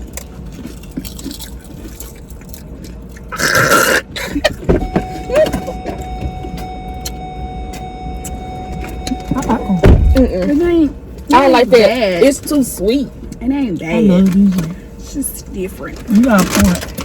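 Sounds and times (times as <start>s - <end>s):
people crunching chips: 0.0s - 4.2s.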